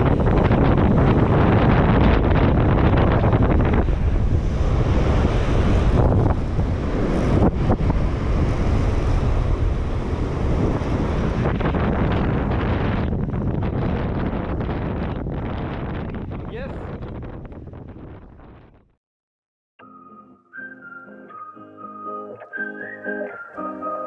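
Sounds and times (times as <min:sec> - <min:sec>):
strong wind buffeting microphone: 0:00.0 - 0:19.0.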